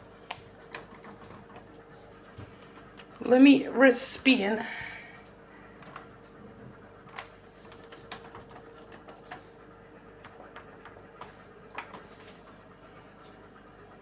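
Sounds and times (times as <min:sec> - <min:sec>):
faint steady hum: 0:00.0 - 0:14.0
washing machine clicks and ticks: 0:00.3 - 0:01.9, 0:05.2 - 0:06.4, 0:07.0 - 0:09.5, 0:10.2 - 0:12.4.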